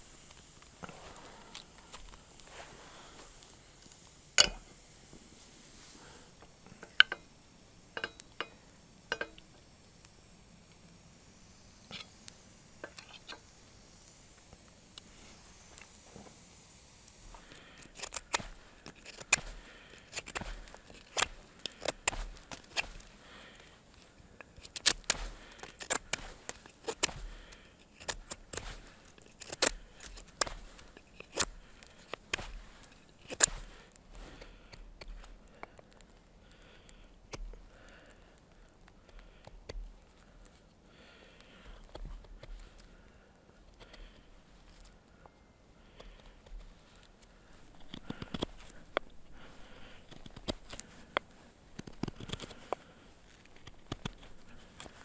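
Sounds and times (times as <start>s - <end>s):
sharp clicks and light knocks: 6.4s - 11.0s, 50.1s - 55.0s.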